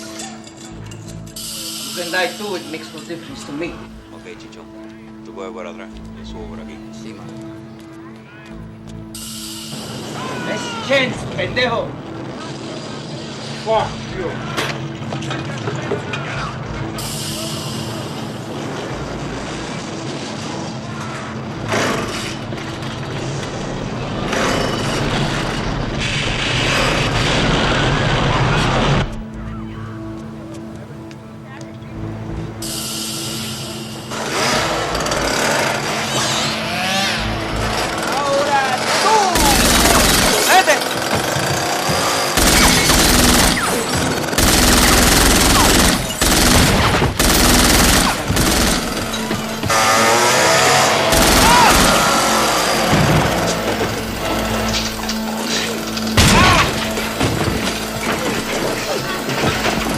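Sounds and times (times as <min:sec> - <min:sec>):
film score music: 0:00.0 - 0:59.9
chainsaw engine revving: 0:34.1 - 0:59.9
automatic gunfire bursts: 0:38.8 - 0:53.8.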